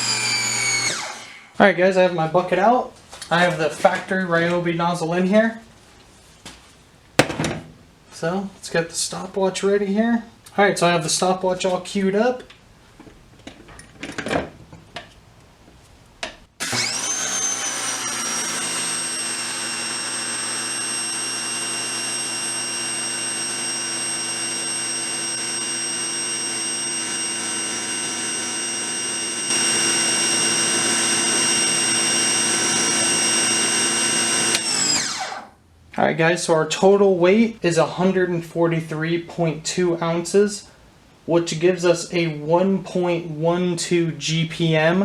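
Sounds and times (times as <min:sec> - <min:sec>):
pressure washer whining: 0:00.0 - 0:01.5, 0:16.6 - 0:35.5.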